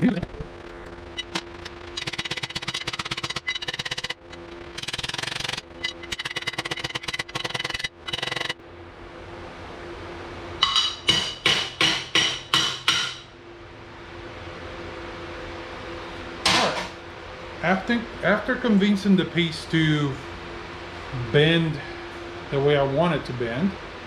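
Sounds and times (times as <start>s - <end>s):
faint steady hum: 0.0s - 24.0s
hammer striking steel bar: 10.6s - 13.3s.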